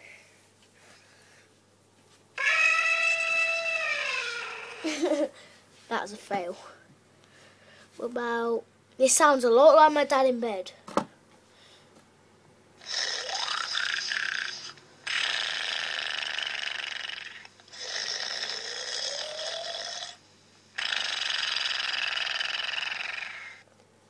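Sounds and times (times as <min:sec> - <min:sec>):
person snoring: 0:12.8 - 0:20.2, 0:20.8 - 0:23.6.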